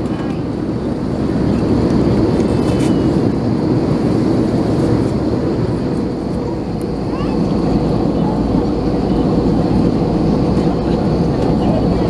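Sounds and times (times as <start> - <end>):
airplane cabin roar in flight: 0.0 - 12.0.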